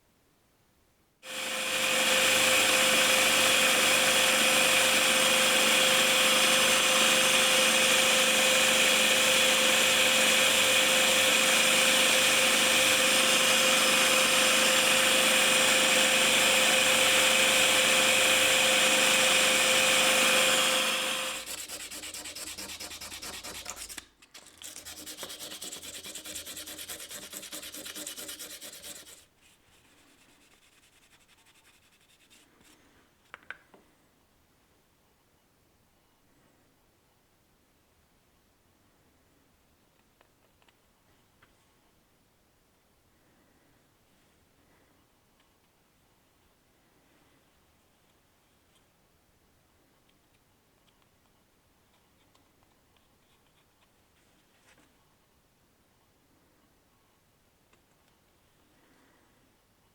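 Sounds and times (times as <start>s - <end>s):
quieter sanding sound: 1.2s - 33.0s
power sander grinding: 1.3s - 24.0s, 24.6s - 29.2s.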